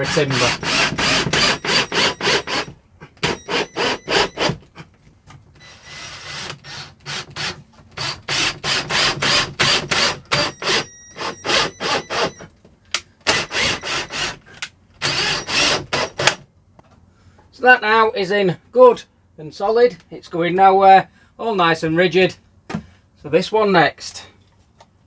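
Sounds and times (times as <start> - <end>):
cordless drill clicking: 0.0 - 4.6, 5.6 - 12.4, 13.2 - 16.4.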